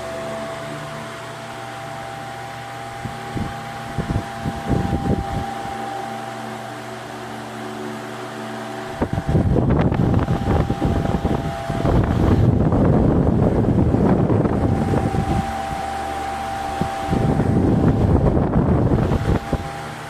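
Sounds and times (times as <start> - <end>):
fan motor humming: 0.0 - 20.0
wind buffeting microphone: 2.8 - 5.8, 8.9 - 20.0.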